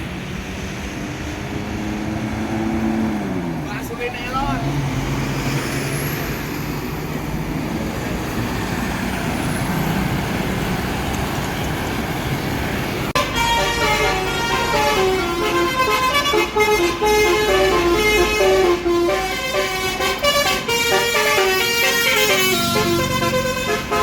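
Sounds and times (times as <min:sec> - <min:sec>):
bus engine: 0:00.0 - 0:24.0
traffic rumble: 0:00.0 - 0:24.0
musical air horn tune: 0:13.2 - 0:24.0.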